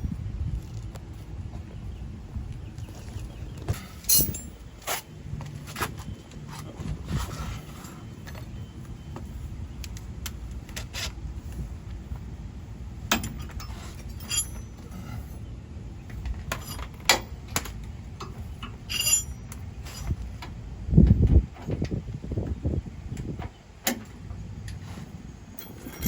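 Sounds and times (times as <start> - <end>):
steady low rumble: 0.0 - 26.0
metal tools clinking: 3.8 - 4.6, 13.1 - 15.3, 16.5 - 17.2, 18.6 - 20.2, 25.5 - 26.0.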